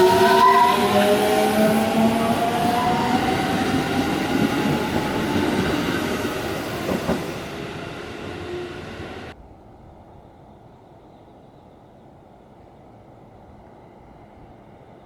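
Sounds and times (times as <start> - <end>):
train wheels on rails: 0.0 - 9.4.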